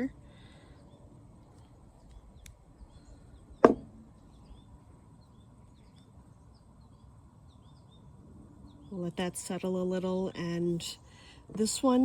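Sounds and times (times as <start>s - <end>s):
jar knocking on hard surface: 3.6s - 3.9s.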